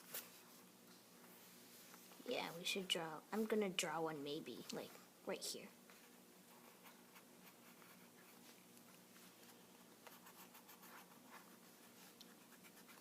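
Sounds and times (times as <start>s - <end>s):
faint steady hum: 0.0s - 13.0s
pencil scratching on paper: 6.6s - 8.4s, 10.0s - 13.0s.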